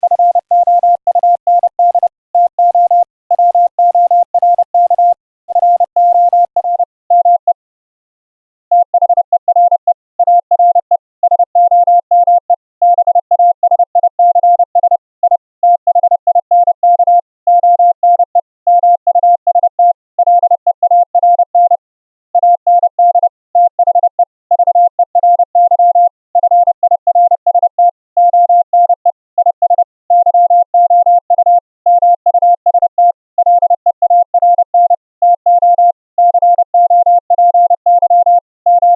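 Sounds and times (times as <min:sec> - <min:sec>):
morse code tone: 0:00.0 - 0:07.5, 0:27.2 - 0:38.9.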